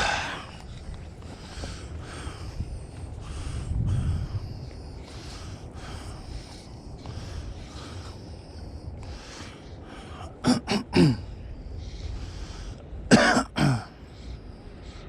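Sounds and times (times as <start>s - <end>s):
man coughing: 10.4s - 11.3s, 13.1s - 13.9s.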